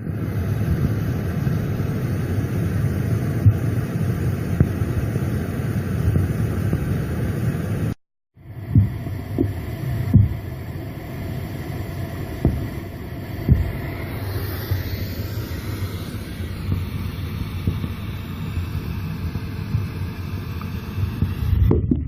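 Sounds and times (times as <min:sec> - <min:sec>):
steady low rumble: 0:00.0 - 0:22.0
short dull thumps: 0:08.7 - 0:10.4, 0:12.4 - 0:12.8, 0:13.4 - 0:13.8.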